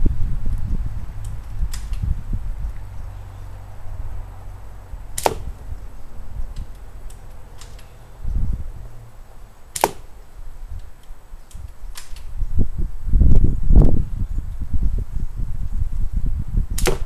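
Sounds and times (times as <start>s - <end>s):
airsoft rifle shots: 5.1s - 5.8s, 9.7s - 10.4s, 16.8s - 17.0s
faint clicks: 6.5s - 8.1s.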